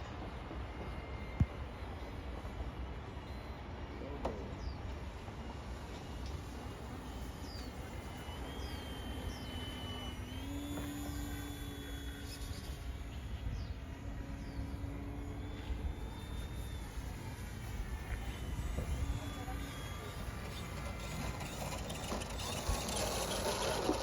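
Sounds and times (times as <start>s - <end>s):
model airplane motor drone: 0.0s - 24.0s
birds chirping: 0.3s - 5.2s, 6.9s - 23.9s.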